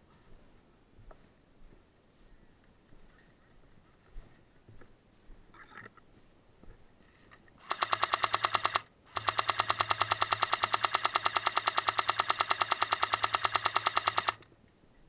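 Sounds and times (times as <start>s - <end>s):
electric airsoft gun firing bursts: 7.6s - 14.5s.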